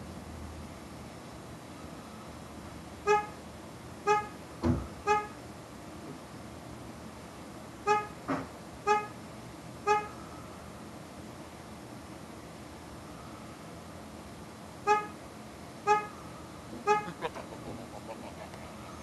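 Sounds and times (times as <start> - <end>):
car horn honking short toots: 3.1 - 3.3, 4.1 - 4.4, 5.0 - 5.4, 7.9 - 8.2, 8.9 - 9.2, 9.9 - 10.2, 14.9 - 15.2, 15.9 - 16.2, 16.8 - 17.1
dull thump: 4.6 - 4.9.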